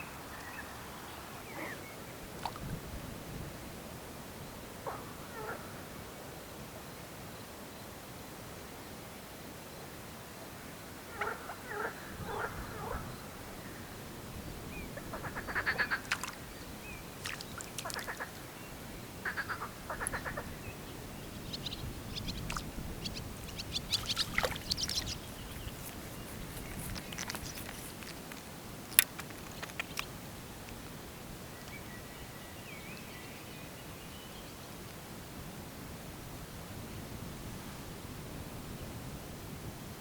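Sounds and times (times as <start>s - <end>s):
pulsed animal calls: 21.3s - 27.9s.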